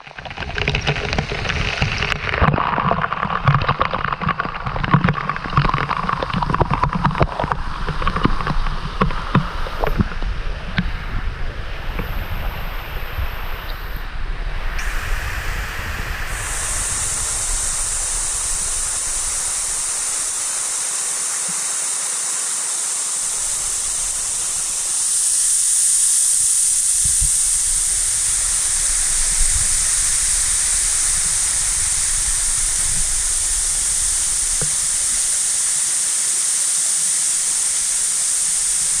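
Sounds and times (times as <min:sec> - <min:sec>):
waterfall rushing: 0:14.8 - 0:25.8.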